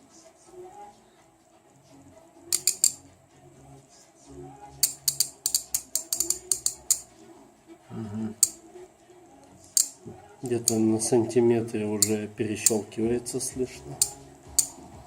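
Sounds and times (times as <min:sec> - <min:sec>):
ratchet handle clicking: 0:02.5 - 0:03.0, 0:04.8 - 0:07.0, 0:09.8 - 0:10.0, 0:14.0 - 0:14.8.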